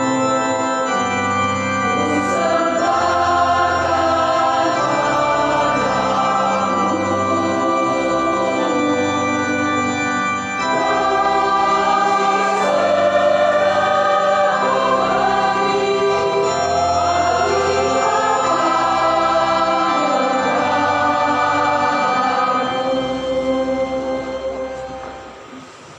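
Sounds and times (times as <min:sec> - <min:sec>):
choir singing a hymn: 0:00.0 - 0:25.3
organ chords: 0:00.0 - 0:25.9.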